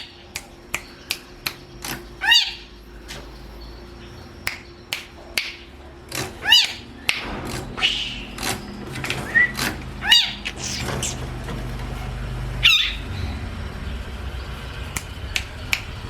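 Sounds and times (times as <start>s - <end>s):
harsh bird calls: 0.0s - 16.0s
sharp clicking notes: 4.4s - 8.7s.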